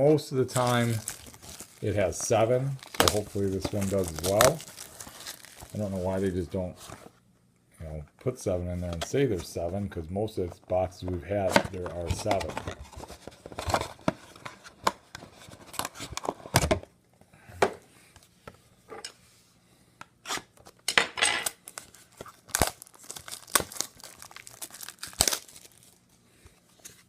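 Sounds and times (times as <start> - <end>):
packaging tearing and crinkling: 0.5 - 6.4, 21.4 - 26.1.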